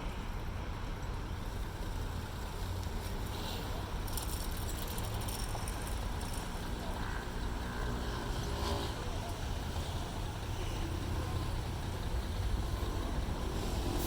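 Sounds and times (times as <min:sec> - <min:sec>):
low engine rumble: 0:00.0 - 0:14.0.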